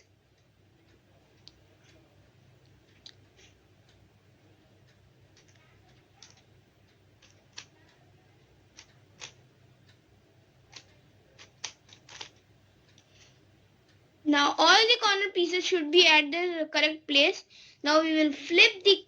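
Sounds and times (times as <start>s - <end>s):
low steady hum: 0.0s - 19.0s
puzzle cube clicks: 8.7s - 9.4s, 10.7s - 12.4s.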